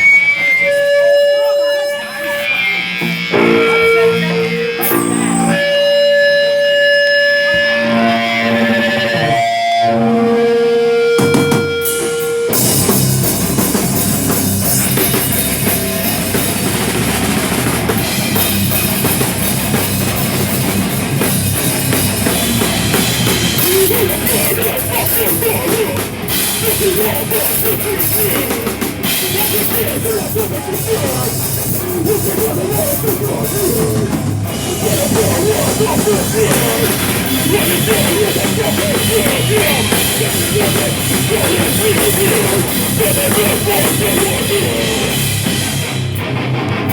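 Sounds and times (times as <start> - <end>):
live rock band playing: 0.0 - 46.9
cymbals: 3.1 - 8.6
bass drum: 12.6 - 46.9.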